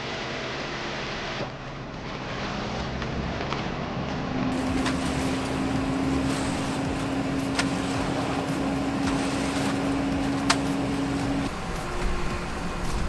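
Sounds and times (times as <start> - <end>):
lorry engine rumbling: 1.8 - 13.0
steady hum: 4.5 - 13.0.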